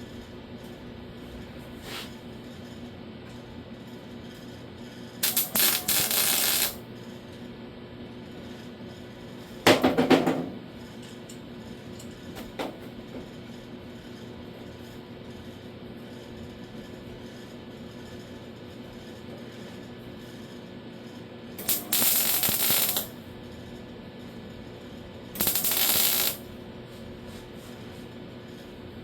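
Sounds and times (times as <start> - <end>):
crackling welding on sheet steel: 5.2 - 6.8, 21.6 - 23.2, 25.4 - 26.6.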